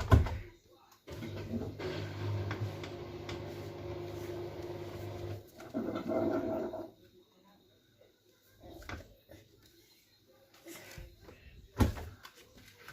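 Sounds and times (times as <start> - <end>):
washing machine spinning: 1.1 - 6.6.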